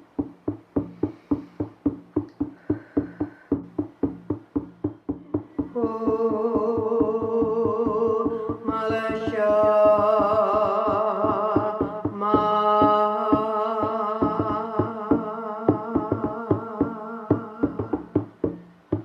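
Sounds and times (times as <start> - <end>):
steady drum beat: 0.0 - 19.0
person chanting held notes: 5.1 - 18.2.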